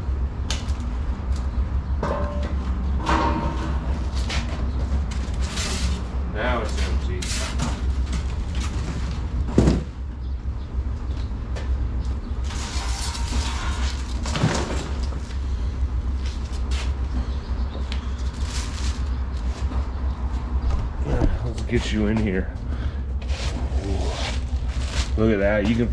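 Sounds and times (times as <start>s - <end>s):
steady low hum: 0.0s - 25.9s
cardboard box scraping and rustling: 12.4s - 15.3s, 23.2s - 25.2s.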